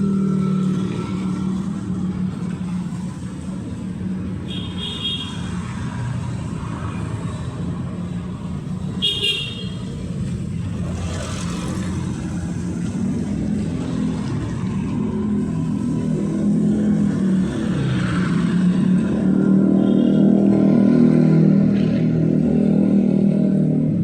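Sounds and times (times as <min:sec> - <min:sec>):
street traffic engines: 0:00.0 - 0:24.0
high horn toots: 0:04.5 - 0:05.5, 0:09.0 - 0:09.9.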